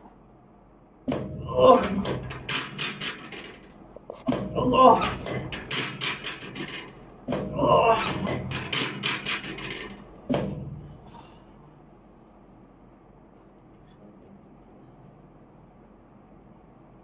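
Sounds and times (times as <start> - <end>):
muffled voice: 13.7 - 15.5.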